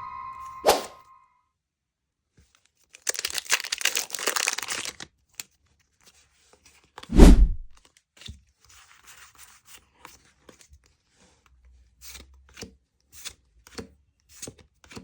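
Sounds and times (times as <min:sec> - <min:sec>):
foil pack tearing: 0:03.0 - 0:05.0
short whoosh: 0:07.1 - 0:07.7.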